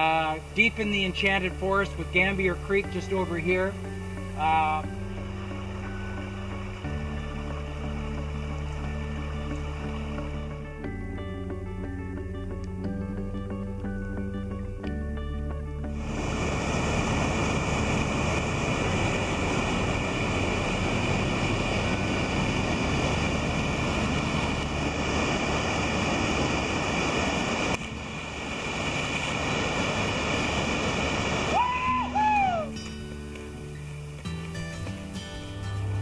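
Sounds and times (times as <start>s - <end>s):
water rushing: 0.0s - 12.5s, 15.7s - 36.0s
whistled call: 31.5s - 32.8s.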